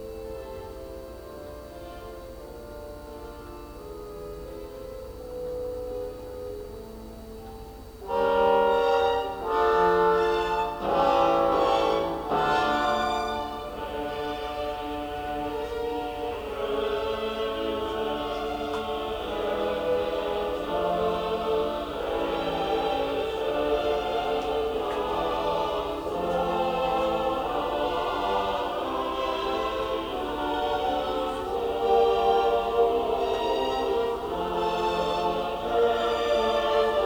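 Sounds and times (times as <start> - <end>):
choir singing long held notes: 8.0 - 37.0.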